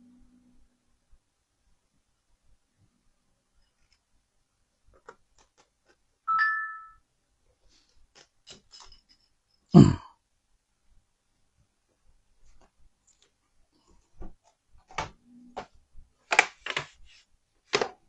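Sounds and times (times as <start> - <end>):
two-tone electronic chime: 6.3 - 7.0.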